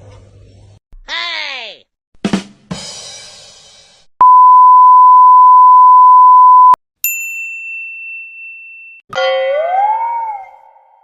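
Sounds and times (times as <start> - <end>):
censor beep: 4.2 - 6.8.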